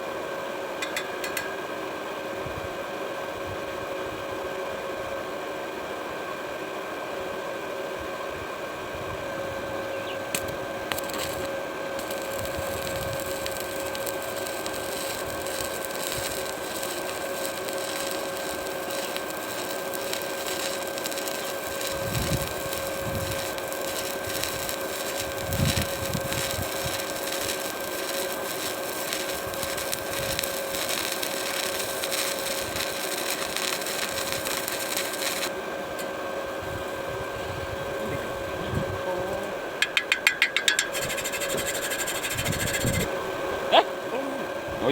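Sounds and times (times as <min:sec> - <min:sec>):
steady hum: 0:00.0 - 0:44.9
welding arc crackling and sizzling: 0:10.3 - 0:36.2, 0:39.4 - 0:43.1.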